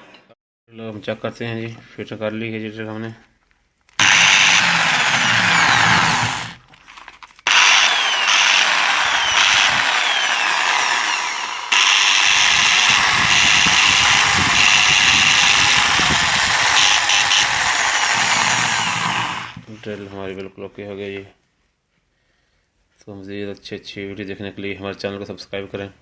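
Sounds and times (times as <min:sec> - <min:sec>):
electric drill running: 0:04.0 - 0:06.6, 0:07.5 - 0:19.6.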